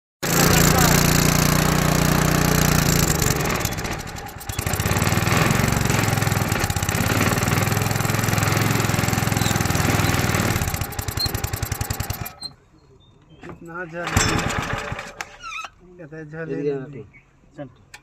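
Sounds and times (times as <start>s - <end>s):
small drilling machine engine: 0.2s - 12.5s.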